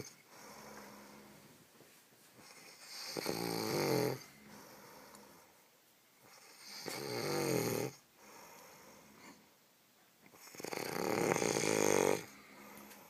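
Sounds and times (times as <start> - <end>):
soft breathing: 0.0 - 3.1, 4.2 - 6.9, 8.2 - 9.6, 12.2 - 13.0
person snoring: 2.8 - 4.8, 6.5 - 8.0, 10.4 - 12.8.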